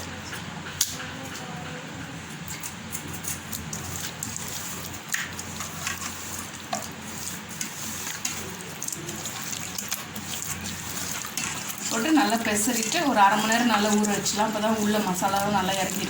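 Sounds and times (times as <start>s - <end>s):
hand squelching fish in wet paste: 3.7s - 16.0s.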